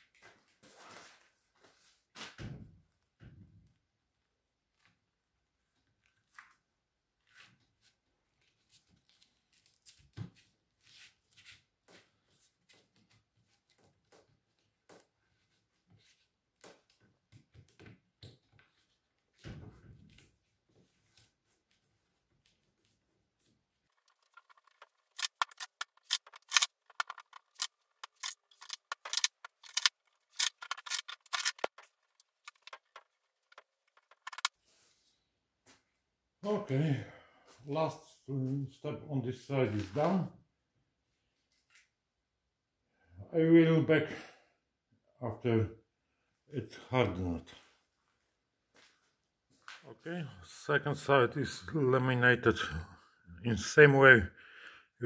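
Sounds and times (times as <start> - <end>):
rustles of hand work: 0.0 - 2.4, 6.1 - 17.8, 18.4 - 35.8
scissors snipping: 24.0 - 34.5.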